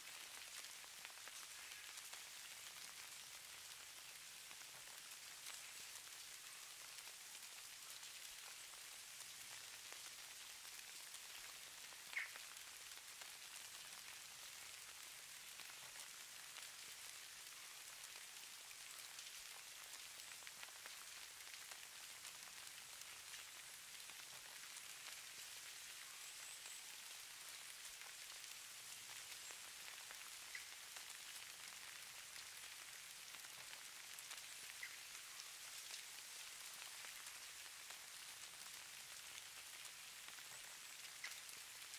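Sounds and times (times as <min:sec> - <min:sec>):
falling snow pattering: 0:00.1 - 0:41.9.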